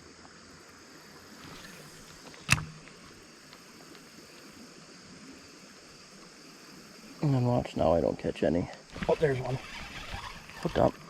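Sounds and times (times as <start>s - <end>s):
insects droning: 0.0s - 11.0s
sharp click: 1.5s - 3.0s.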